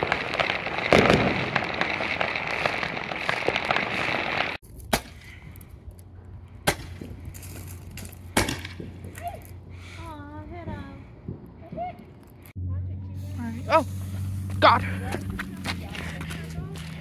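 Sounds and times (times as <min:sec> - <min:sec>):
fireworks bangs: 0:00.0 - 0:05.1, 0:08.3 - 0:09.2
fireworks crackling: 0:00.0 - 0:05.2.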